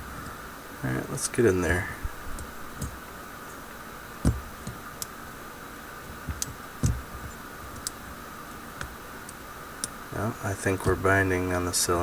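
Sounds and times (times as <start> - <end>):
steady background noise: 0.0 - 12.0
padlock knocks: 6.3 - 7.3.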